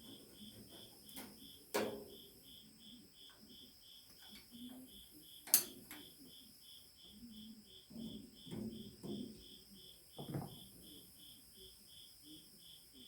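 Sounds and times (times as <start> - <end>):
cricket chirping: 0.0 - 13.0.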